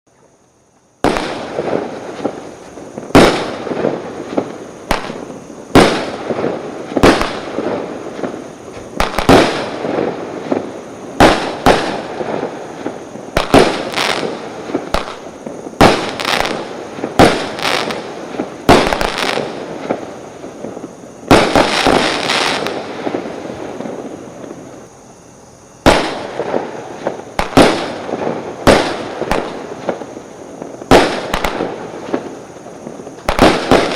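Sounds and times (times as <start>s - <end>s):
firework crackling: 0.1s - 33.9s
firework bangs: 1.0s - 24.9s, 25.8s - 33.9s.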